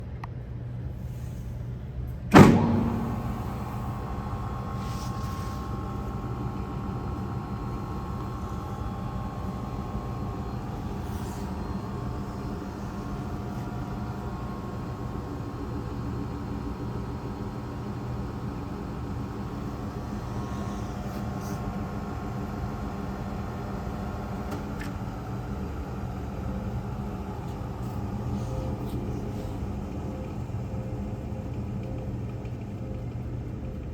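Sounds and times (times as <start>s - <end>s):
granulator hum with high whine: 1.6s - 33.9s
loud machine clunk: 2.3s - 14.7s
plastics grinder motor hum: 2.7s - 17.3s.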